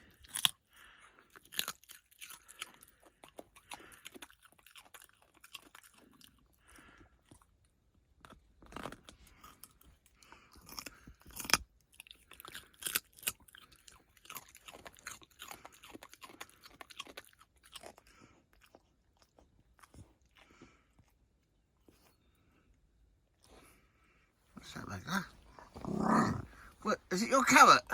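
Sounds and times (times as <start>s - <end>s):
puppy crunching carrot: 0.0s - 22.2s, 24.6s - 27.9s.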